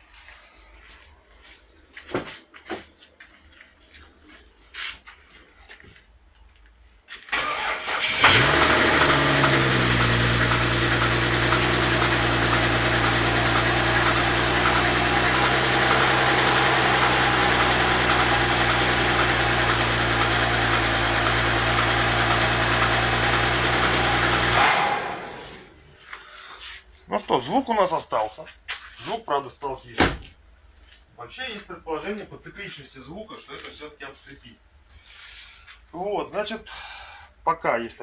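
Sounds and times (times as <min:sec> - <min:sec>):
car engine starter cranking: 0:07.3 - 0:25.4.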